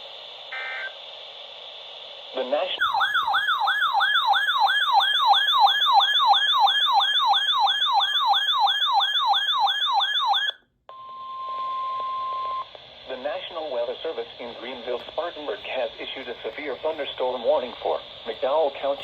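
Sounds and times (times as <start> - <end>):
radio hiss: 0.0 - 2.8, 12.6 - 19.0
electronic siren-like alert tone: 2.8 - 10.6
steady alarm tone: 2.8 - 10.6.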